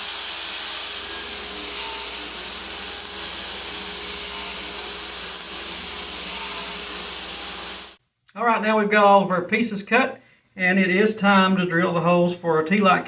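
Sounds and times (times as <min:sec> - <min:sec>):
power saw cutting wood: 0:00.0 - 0:08.0.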